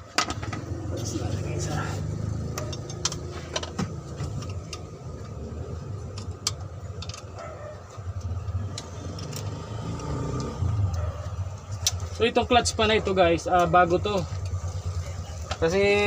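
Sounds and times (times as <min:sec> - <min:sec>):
low engine-like hum: 0:00.3 - 0:16.0
tools clinking on metal parts: 0:02.5 - 0:03.8.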